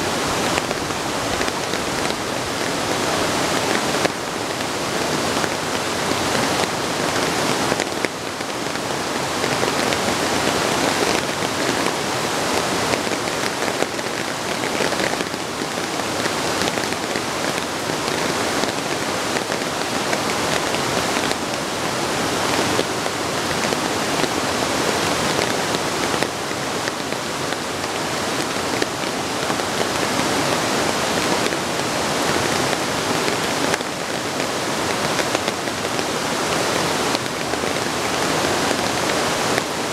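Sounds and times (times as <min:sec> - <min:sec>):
rain pattering on surfaces: 0:00.0 - 0:39.9.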